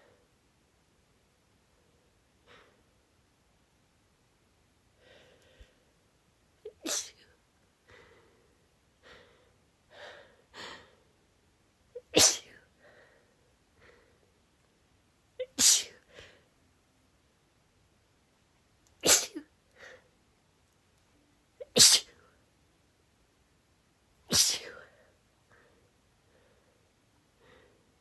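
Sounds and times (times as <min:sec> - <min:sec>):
woman breathing: 0:02.4 - 0:03.0, 0:05.0 - 0:06.0, 0:07.8 - 0:11.2, 0:12.7 - 0:14.4, 0:16.0 - 0:16.6, 0:24.8 - 0:28.0
woman sneezing: 0:12.0 - 0:12.6, 0:15.4 - 0:16.0, 0:19.0 - 0:19.5, 0:21.6 - 0:22.2, 0:24.3 - 0:24.9.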